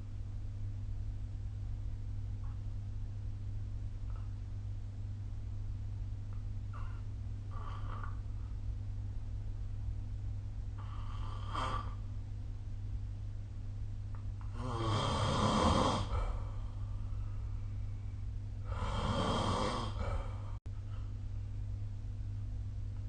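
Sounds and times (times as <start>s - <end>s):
steady low hum: 0.0s - 23.0s
person snoring: 10.8s - 12.0s, 14.5s - 16.7s, 18.6s - 20.6s
faint breath: 16.0s - 19.1s.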